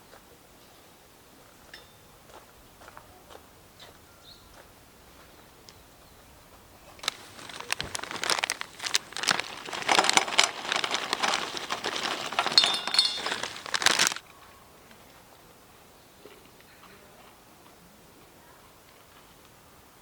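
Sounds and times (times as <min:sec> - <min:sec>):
crinkly rustling by hand: 0:06.8 - 0:14.2.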